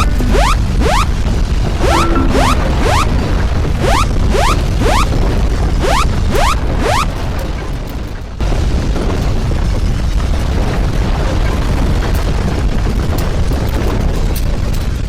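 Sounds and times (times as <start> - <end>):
loud deep rumbling noise: 0.0 - 12.9.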